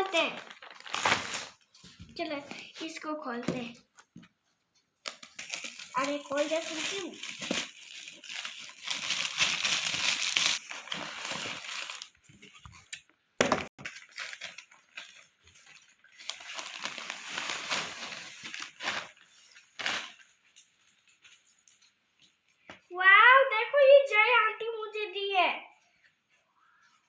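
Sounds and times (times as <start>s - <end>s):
sharp paper crackle: 0.0s - 1.7s, 5.1s - 12.2s, 13.8s - 20.7s
gift wrapping tearing and rustling: 0.0s - 2.7s, 5.0s - 12.6s, 13.8s - 21.3s.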